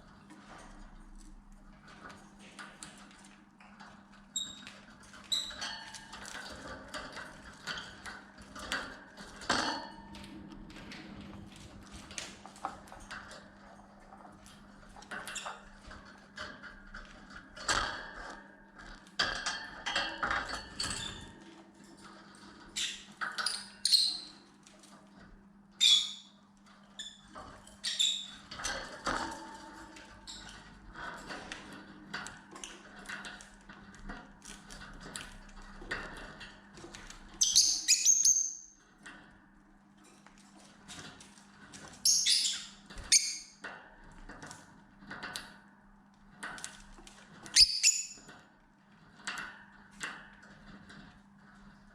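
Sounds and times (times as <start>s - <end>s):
lovebirds chirping and squeaking: 22.8s - 24.3s, 37.4s - 38.7s, 42.1s - 43.6s, 47.6s - 48.2s.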